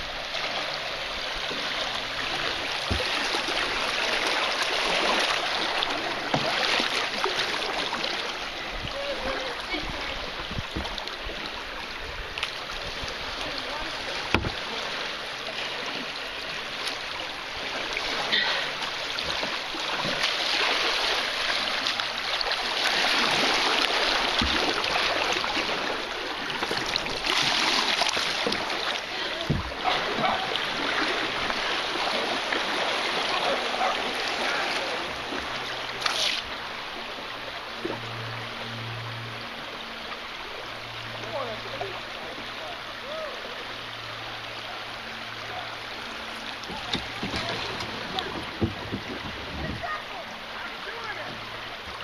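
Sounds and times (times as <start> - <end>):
creek water rushing and splashing: 0.0 - 52.0
dull knocks: 14.3 - 14.6, 46.7 - 49.9.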